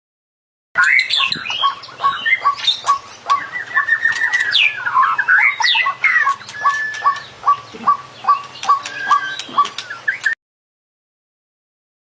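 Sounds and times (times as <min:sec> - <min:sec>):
bird singing varied whistles: 0:00.8 - 0:10.4
short clipped bird notes: 0:06.1 - 0:10.4.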